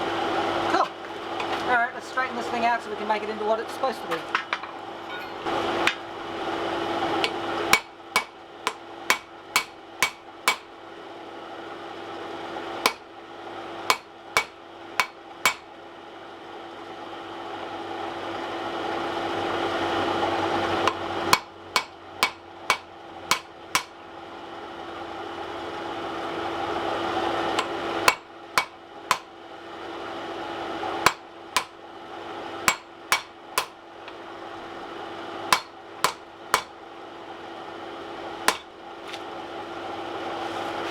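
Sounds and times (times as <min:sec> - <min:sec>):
hammer striking steel on anvil: 0:04.3 - 0:06.0, 0:07.2 - 0:10.7, 0:12.8 - 0:13.1, 0:13.9 - 0:15.7, 0:20.8 - 0:24.0, 0:27.6 - 0:29.3, 0:31.0 - 0:31.8, 0:32.6 - 0:34.2, 0:35.5 - 0:36.8, 0:38.4 - 0:38.7.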